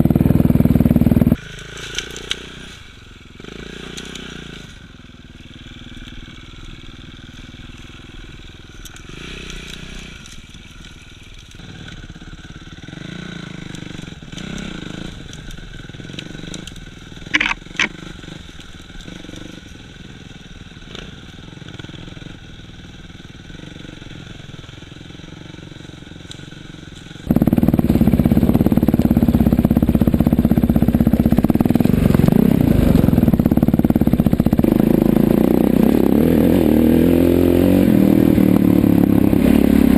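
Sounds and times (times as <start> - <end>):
motorcycle engine running: 0.0 - 39.9
short sharp high-pitched sounds: 17.3 - 17.9.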